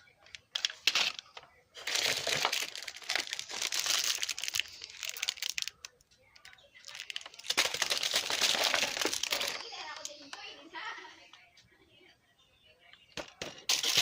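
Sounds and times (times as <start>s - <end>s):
crinkling rustling noise: 0.2s - 10.3s.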